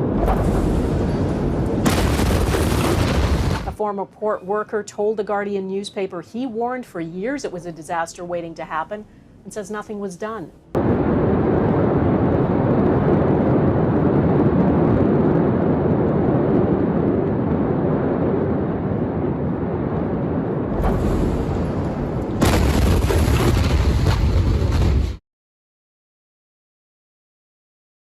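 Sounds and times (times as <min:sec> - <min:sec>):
explosion rumble and roar: 0:00.0 - 0:03.8, 0:10.7 - 0:25.2.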